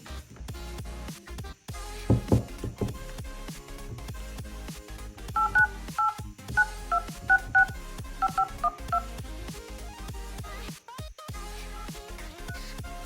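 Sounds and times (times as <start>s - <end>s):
music: 0.0s - 13.0s
phone keypad dialing tones: 5.4s - 9.1s.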